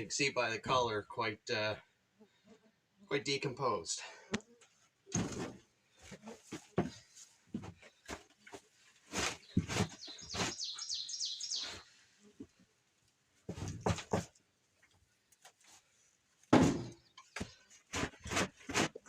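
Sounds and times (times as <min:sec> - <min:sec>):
shovel scraping and tossing sawdust: 0:09.0 - 0:10.8, 0:17.9 - 0:19.0
bird chirping: 0:09.4 - 0:12.0.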